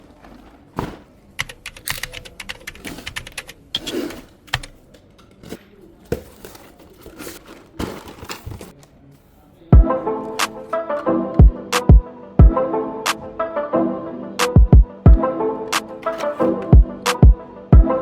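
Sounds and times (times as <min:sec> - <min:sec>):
packaging being handled: 0:16.0 - 0:16.7.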